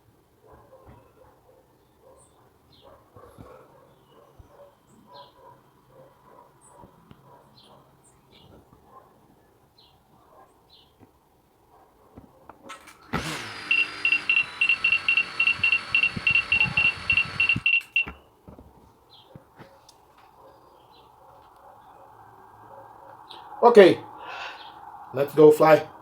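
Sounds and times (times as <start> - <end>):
drone motors whining: 12.9 - 18.1
rapid high beeping: 13.6 - 18.1.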